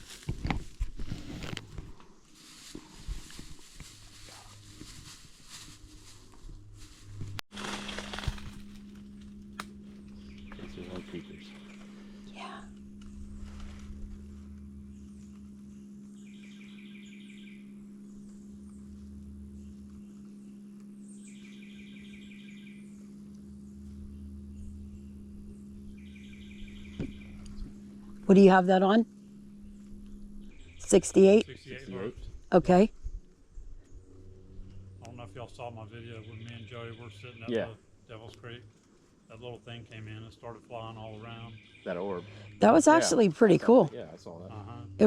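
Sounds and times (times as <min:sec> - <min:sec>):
footsteps in leaf litter: 0:00.0 - 0:09.4
low electronic tone: 0:05.9 - 0:38.2, 0:39.4 - 0:45.0
bird calling high notes: 0:34.2 - 0:37.5, 0:39.3 - 0:45.0.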